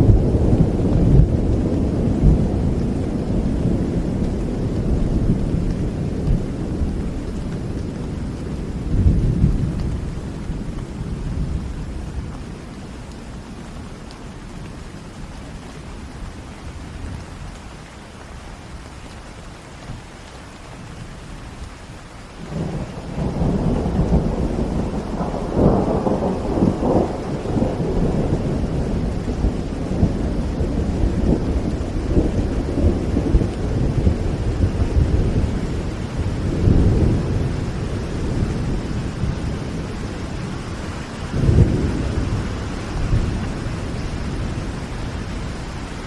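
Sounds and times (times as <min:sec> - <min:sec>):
rolling thunder: 0:00.0 - 0:12.3, 0:22.4 - 0:46.0
steady rain falling: 0:00.0 - 0:46.0.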